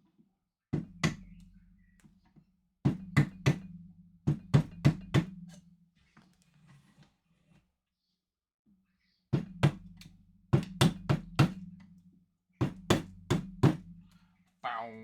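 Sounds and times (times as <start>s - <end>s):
sharp knocks on hard surface: 2.9s - 3.7s, 4.3s - 5.5s, 9.4s - 11.6s, 12.6s - 13.8s.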